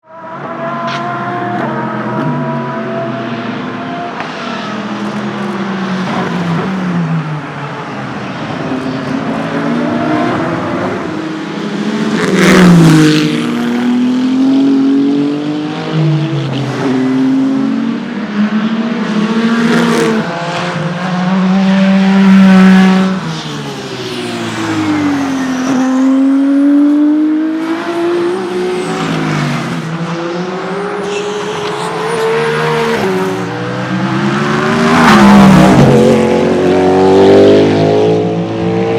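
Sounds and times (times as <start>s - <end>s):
race cars passing at speed: 0.0s - 38.9s.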